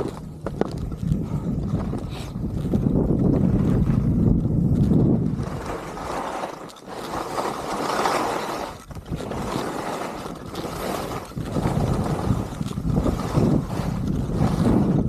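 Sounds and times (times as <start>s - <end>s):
wind buffeting microphone: 0.0s - 15.0s
skis hissing through snow: 5.3s - 15.0s.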